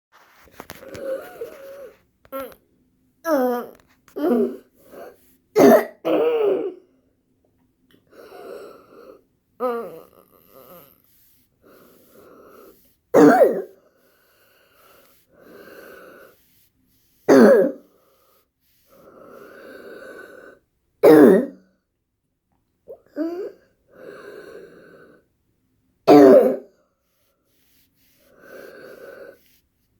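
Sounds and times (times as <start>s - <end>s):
person coughing: 5.6s - 6.8s, 13.2s - 13.8s, 17.3s - 17.8s, 21.0s - 21.6s, 26.1s - 26.7s
wheezing breaths: 8.0s - 20.7s, 23.3s - 25.4s, 27.0s - 29.7s.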